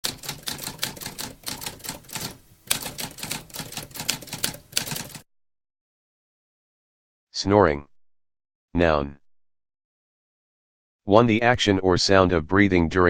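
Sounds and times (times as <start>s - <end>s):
typewriter typing: 0.0s - 5.2s.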